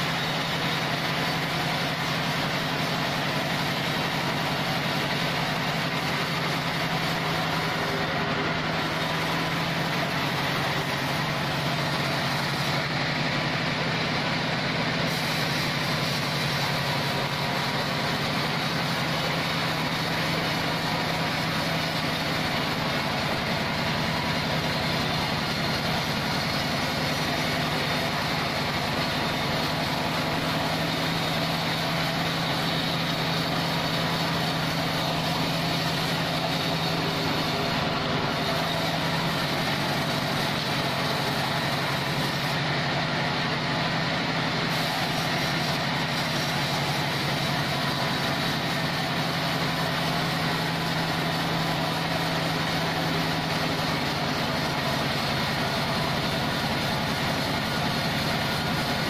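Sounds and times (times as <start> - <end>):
band sawmill machinery droning: 0.0 - 59.0.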